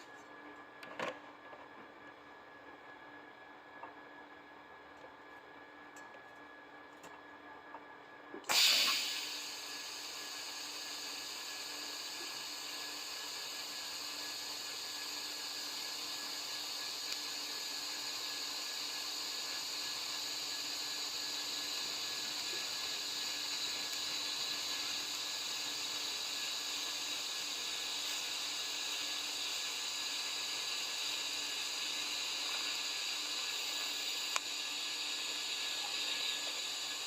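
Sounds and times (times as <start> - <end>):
welding arc hissing: 8.5 - 37.0.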